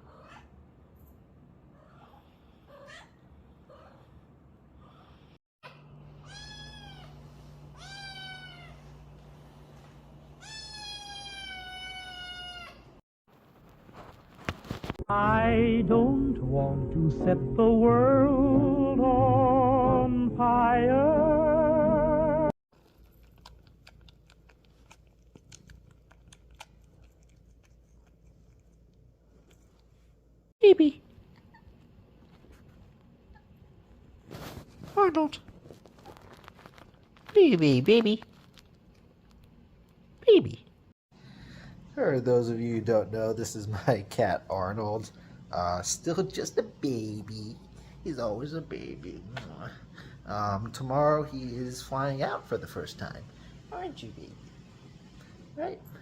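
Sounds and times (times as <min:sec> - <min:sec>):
kitten licking with wet clicks: 0:22.8 - 0:29.9.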